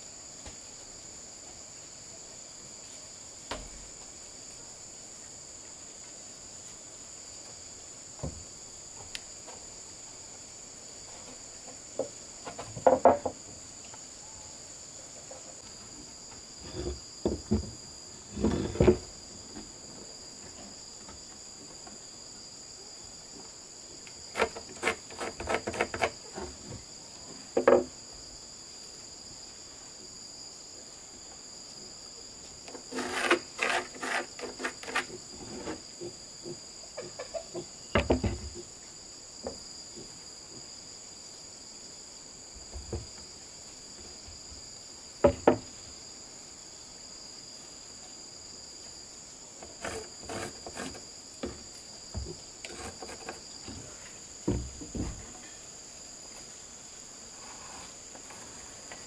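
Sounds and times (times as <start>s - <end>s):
crickets chirring: 0.0s - 59.0s
wooden boards knocking: 12.0s - 13.4s, 54.5s - 55.2s.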